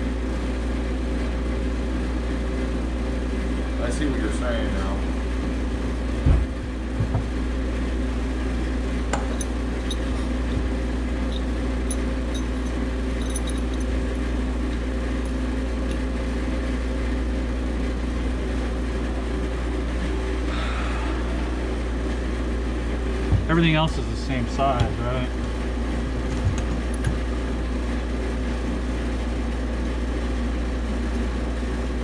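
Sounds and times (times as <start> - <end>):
machinery humming: 0.0 - 32.0
knocks: 6.2 - 7.3
light metallic clinks: 9.1 - 10.4, 11.2 - 14.0.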